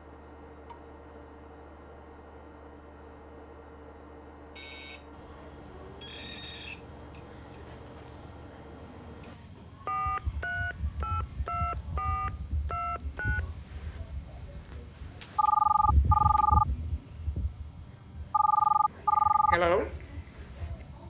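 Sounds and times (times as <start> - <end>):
telephone ringing tone: 4.6 - 9.2, 15.4 - 16.6, 18.4 - 19.7
touch-tone telephone beeps: 9.9 - 13.4, 15.4 - 16.6, 18.4 - 19.6.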